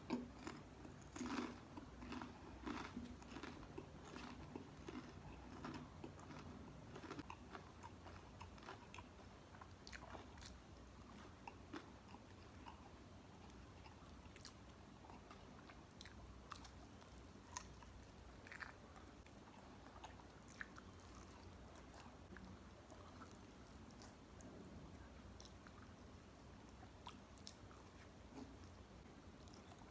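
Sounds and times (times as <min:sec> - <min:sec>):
person chewing and biting: 0:00.1 - 0:09.2.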